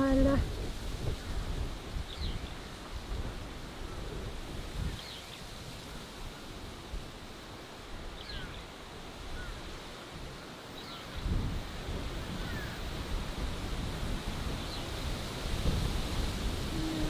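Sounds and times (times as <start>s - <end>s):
wind gust on microphone: 0.0s - 10.4s, 11.1s - 17.0s.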